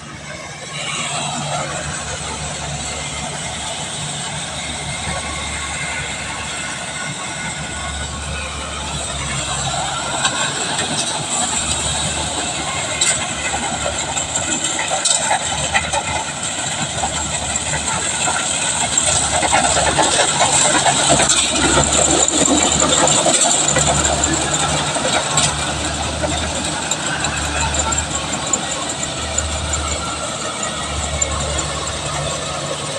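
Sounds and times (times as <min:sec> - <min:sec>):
combine harvester running: 0:00.0 - 0:32.9.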